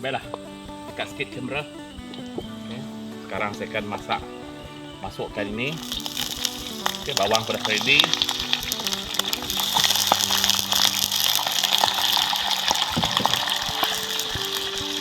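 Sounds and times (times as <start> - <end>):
aromatics sizzling in hot oil: 5.6 - 15.0.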